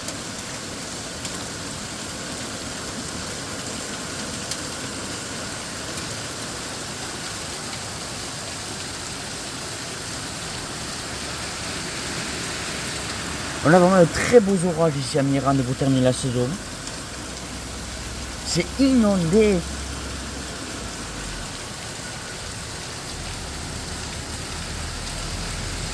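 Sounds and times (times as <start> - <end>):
heavy rain falling: 0.0 - 25.9
drops or hailstones ticking: 0.1 - 25.9.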